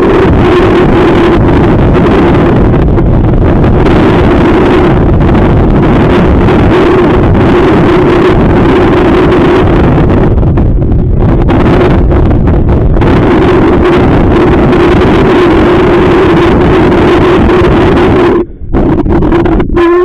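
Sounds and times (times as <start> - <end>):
wind buffeting microphone: 0.0 - 19.8
steady hum: 0.0 - 20.0.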